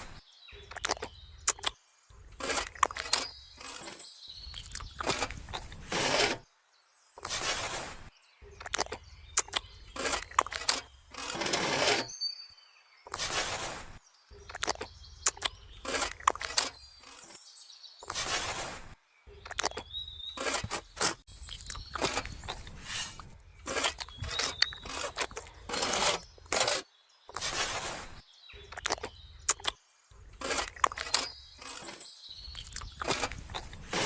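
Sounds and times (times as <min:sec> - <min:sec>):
short scraping swishes: 0:05.0 - 0:06.4, 0:07.2 - 0:08.1, 0:10.0 - 0:12.1, 0:13.1 - 0:14.0, 0:18.1 - 0:19.0, 0:22.0 - 0:26.8, 0:27.4 - 0:28.2, 0:33.0 - 0:34.0.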